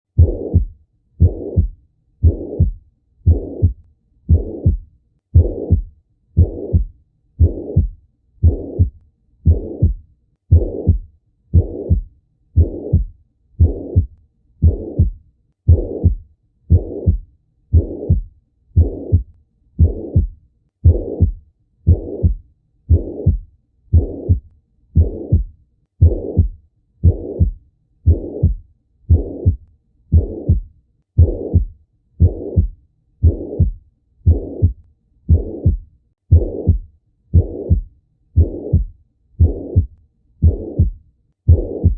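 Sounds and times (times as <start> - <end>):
heart beating through stethoscope: 0.1 - 41.9.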